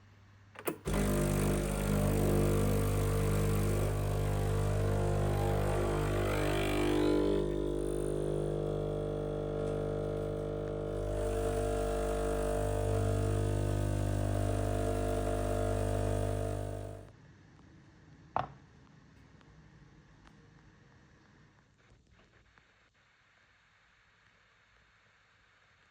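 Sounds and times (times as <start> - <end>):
espresso machine pump humming: 0.6 - 17.1.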